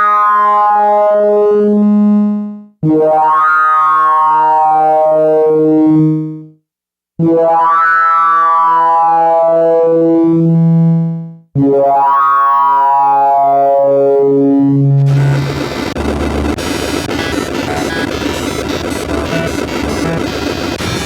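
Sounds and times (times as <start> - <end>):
synthesizer low notes: 8.5 - 21.0.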